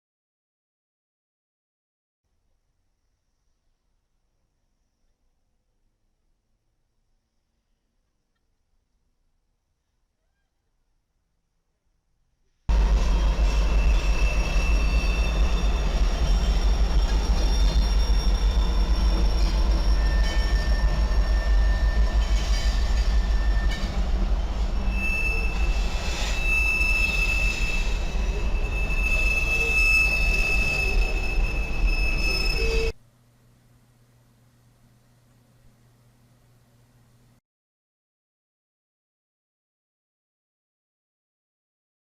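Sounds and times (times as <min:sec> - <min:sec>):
train rumbling on rails: 0:12.7 - 0:33.0
train wheels squealing: 0:12.7 - 0:33.0.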